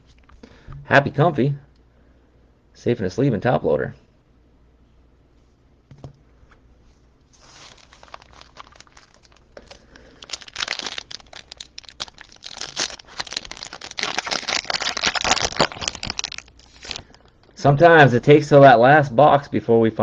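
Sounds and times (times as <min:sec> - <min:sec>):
foil wrapper crinkling and tearing: 0:07.3 - 0:17.5.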